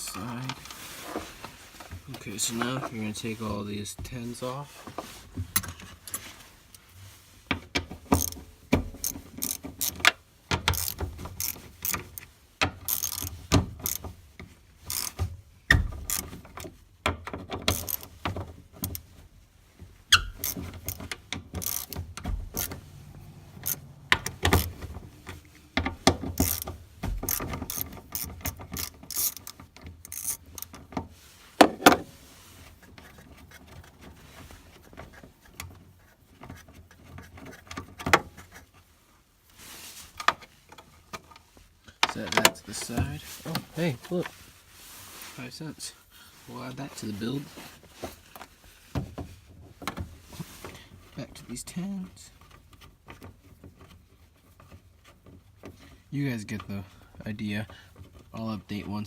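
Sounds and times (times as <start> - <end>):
socket ratchet clicking: 10.7 - 12.1, 12.9 - 14.0, 14.9 - 15.2, 20.2 - 22.8, 23.6 - 24.8, 26.4 - 30.7.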